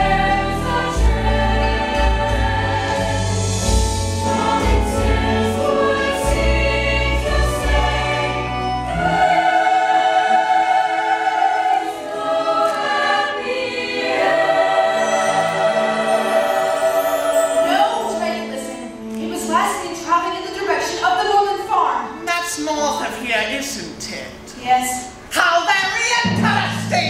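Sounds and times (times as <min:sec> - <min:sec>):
choir singing held chords: 0:00.0 - 0:19.1.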